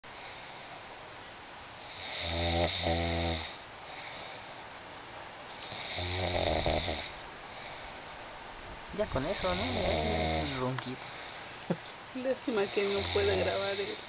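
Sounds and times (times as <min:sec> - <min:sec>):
man snoring: 0:01.8 - 0:04.3, 0:05.6 - 0:07.8, 0:09.2 - 0:11.2, 0:12.6 - 0:14.0.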